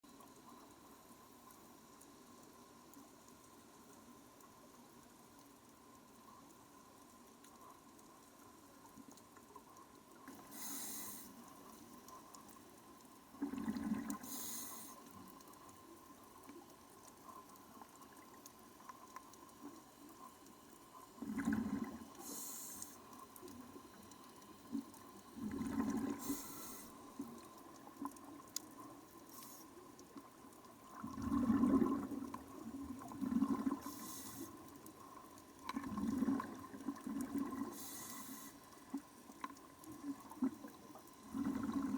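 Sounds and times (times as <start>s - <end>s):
faint steady tone: 0.0s - 41.9s
regulator hiss on inhale: 10.2s - 12.1s, 13.5s - 15.6s, 21.4s - 23.3s, 25.4s - 27.4s, 29.2s - 30.0s, 33.7s - 35.2s, 37.5s - 39.0s
rush of exhaled bubbles: 13.4s - 14.6s, 21.2s - 22.4s, 25.4s - 26.8s, 30.9s - 34.6s, 35.6s - 38.3s, 40.2s - 41.9s.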